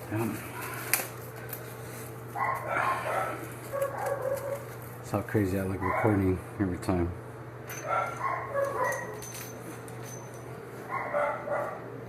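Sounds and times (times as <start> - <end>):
steady low hum: 0.0 - 12.0
dog vocalising: 2.4 - 4.7, 5.8 - 6.2.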